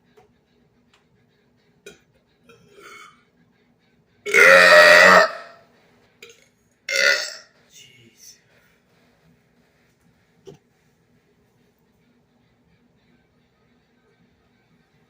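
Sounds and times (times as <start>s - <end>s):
man belching: 4.3s - 5.6s, 6.9s - 7.4s.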